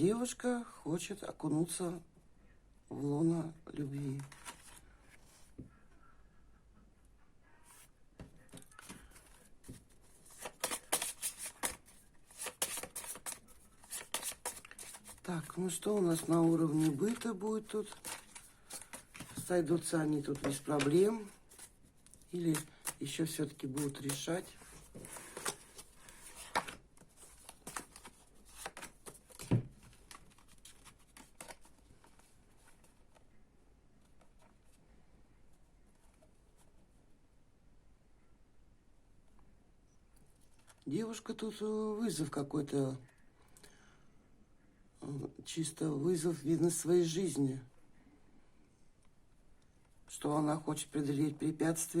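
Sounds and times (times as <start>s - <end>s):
cards being shuffled: 4.1s - 4.8s, 8.5s - 33.2s.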